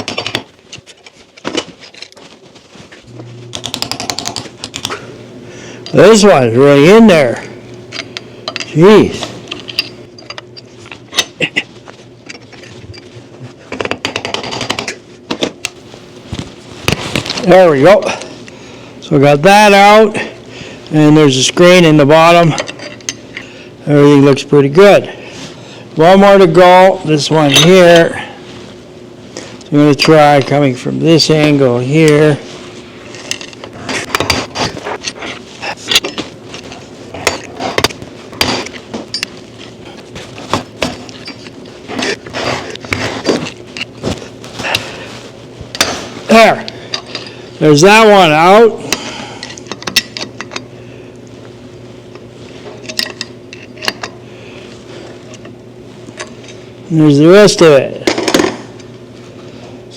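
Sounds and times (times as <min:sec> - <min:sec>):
screwdriver scraping and clicking: 0:03.5 - 0:05.0, 0:33.0 - 0:44.9.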